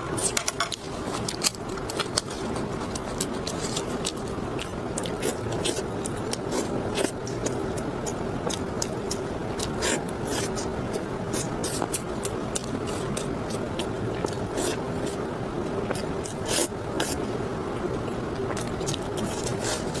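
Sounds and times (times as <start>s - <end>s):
steady low hum: 0.0s - 20.0s
person chewing: 0.2s - 20.0s.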